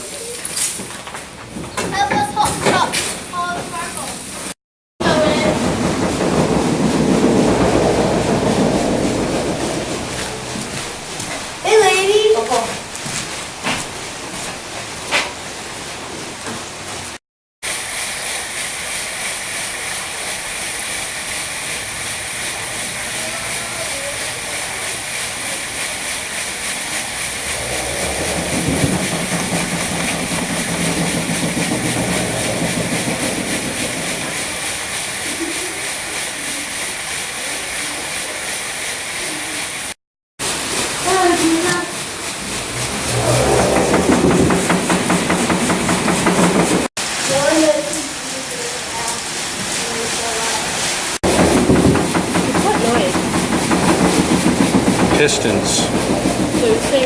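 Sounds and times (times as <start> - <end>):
water pouring onto a water wheel: 5.0 - 16.1, 16.8 - 57.0.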